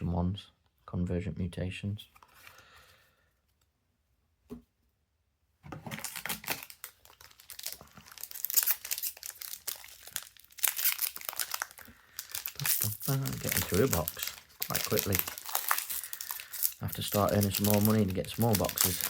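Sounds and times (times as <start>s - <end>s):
foil wrapper crinkling and tearing: 5.9s - 19.0s.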